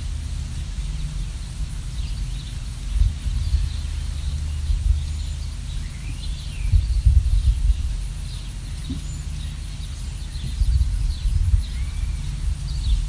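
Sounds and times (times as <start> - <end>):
low rumble: 0.0 - 13.0
songbirds chirping: 0.0 - 13.0.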